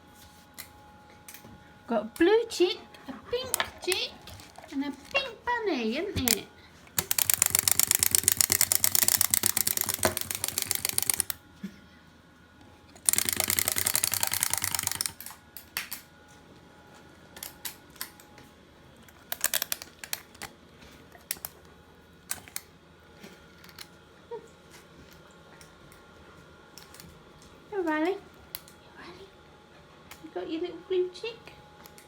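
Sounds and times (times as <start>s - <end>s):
wind-up toy clicking: 7.0s - 11.4s, 13.0s - 15.4s, 19.3s - 20.5s.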